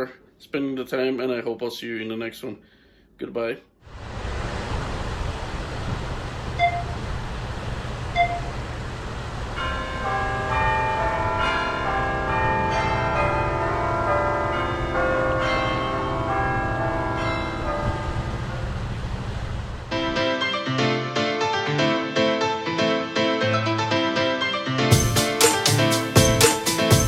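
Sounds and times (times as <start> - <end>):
steady low rumble: 3.9 - 20.2
bells ringing: 9.5 - 18.5.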